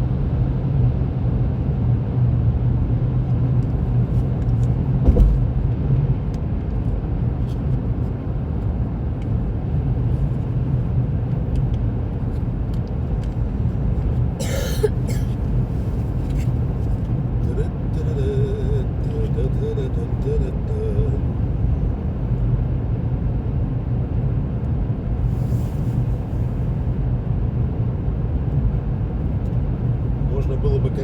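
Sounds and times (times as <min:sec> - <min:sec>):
engine and tyre rumble: 0:00.0 - 0:31.0
thump: 0:05.0 - 0:05.5.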